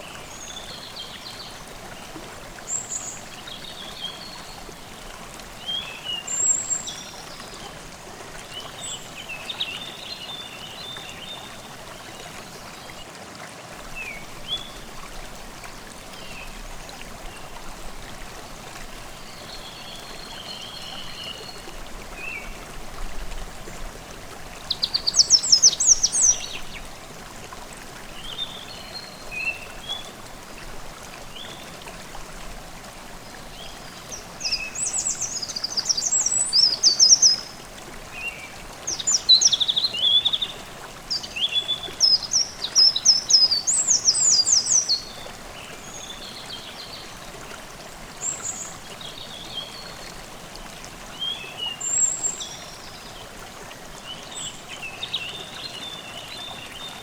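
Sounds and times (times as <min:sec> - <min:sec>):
forest stream babbling: 0:00.0 - 0:57.0
songbirds singing: 0:24.6 - 0:26.9, 0:33.4 - 0:47.2, 0:51.0 - 0:57.0.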